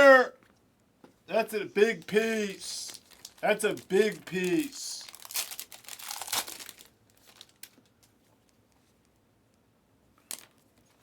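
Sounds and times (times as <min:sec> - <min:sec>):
plastic packaging crinkling: 0:02.3 - 0:08.2, 0:10.2 - 0:11.0.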